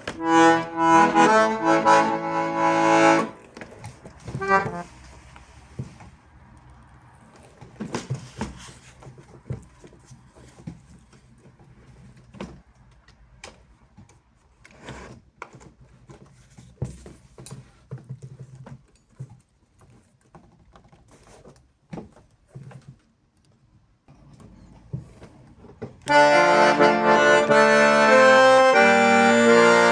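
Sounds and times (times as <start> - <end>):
accordion being handled clicks: 0.0 - 4.8, 26.0 - 29.9.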